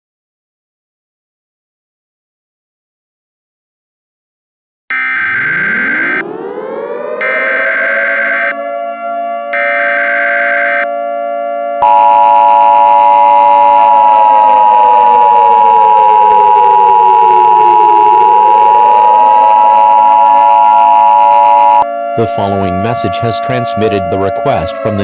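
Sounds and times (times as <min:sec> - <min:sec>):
two-tone attention signal: 0:04.9 - 0:08.6, 0:09.6 - 0:10.9, 0:11.8 - 0:24.6
siren: 0:04.9 - 0:25.0
screechy digital data bursts: 0:07.2 - 0:08.6, 0:09.6 - 0:10.9.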